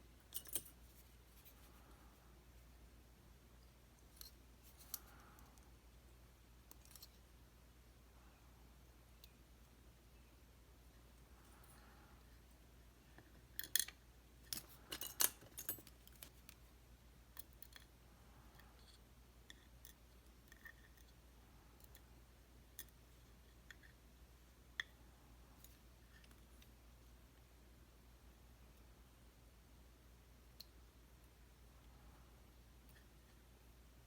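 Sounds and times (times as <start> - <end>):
metallic clicks and taps of lock parts: 13.6 - 16.6.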